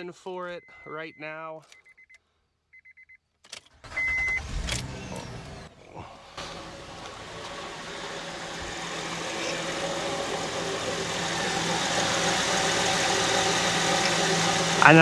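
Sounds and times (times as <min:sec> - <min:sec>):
car engine idling: 0:03.7 - 0:15.0
power steering pump whine: 0:03.8 - 0:15.0.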